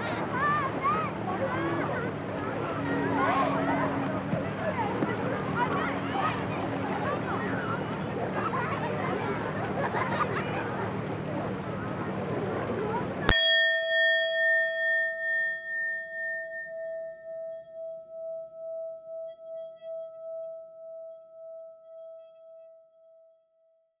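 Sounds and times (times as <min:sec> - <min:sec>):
struck metal chime ringing: 0:13.3 - 0:21.8.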